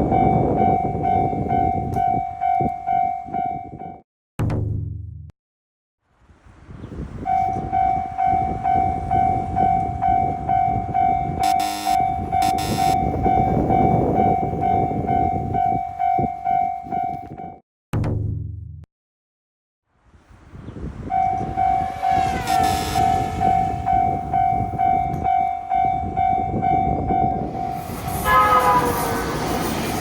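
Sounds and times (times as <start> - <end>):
level-crossing warning bell: 0.0 - 4.0, 7.3 - 17.6, 21.1 - 30.0
train passing rumble: 6.3 - 16.9, 20.1 - 30.0
level crossing electronic bell: 10.6 - 17.3
train horn blasts: 11.4 - 13.0, 21.3 - 23.9, 28.1 - 30.0.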